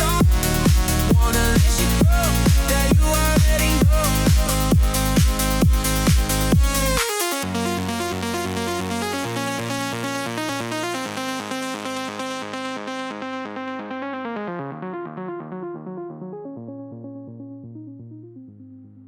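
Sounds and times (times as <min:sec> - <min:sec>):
held bass notes: 0:00.0 - 0:07.0
synthesizer arpeggio: 0:00.0 - 0:19.0.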